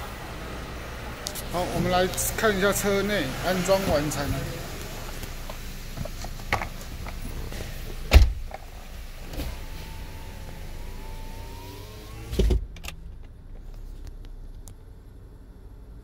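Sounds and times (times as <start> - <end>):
outside background noise: 0.0 - 16.0
car door thud: 5.9 - 8.7.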